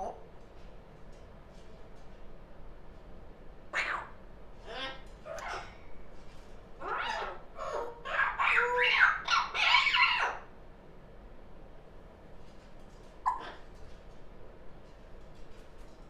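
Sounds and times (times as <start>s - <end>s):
parrot chattering: 3.7s - 5.8s, 6.8s - 10.5s, 13.2s - 13.7s.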